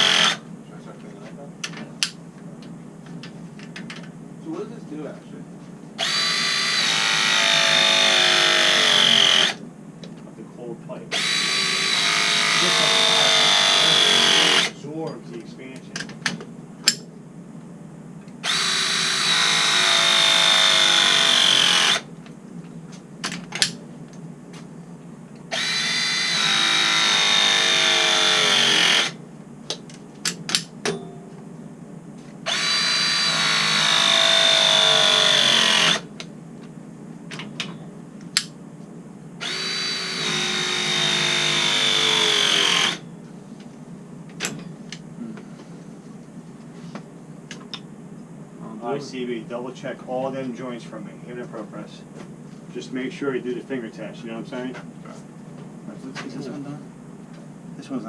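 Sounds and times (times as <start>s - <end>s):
press tool motor whining: 0.0s - 0.4s, 6.0s - 9.6s, 11.1s - 14.8s, 18.4s - 22.1s, 25.5s - 29.2s, 32.5s - 36.1s, 39.4s - 43.1s.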